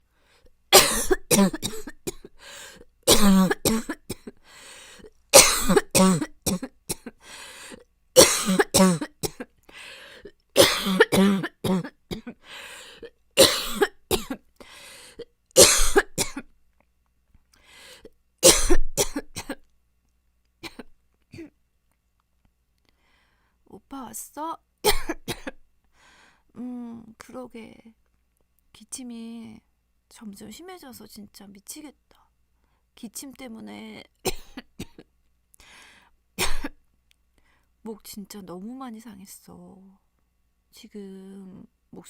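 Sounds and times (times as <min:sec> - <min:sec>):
woman coughing: 0:00.8 - 0:02.4, 0:03.1 - 0:04.4, 0:05.4 - 0:07.2, 0:08.2 - 0:09.5, 0:10.6 - 0:12.4, 0:13.4 - 0:14.4, 0:15.6 - 0:16.5, 0:18.4 - 0:19.6, 0:20.6 - 0:21.5, 0:24.8 - 0:25.6, 0:34.2 - 0:35.1, 0:36.4 - 0:36.8.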